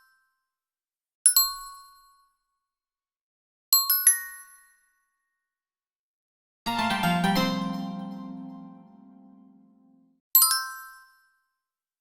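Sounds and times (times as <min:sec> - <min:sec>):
bright bell-like chime: 0:06.7 - 0:09.7.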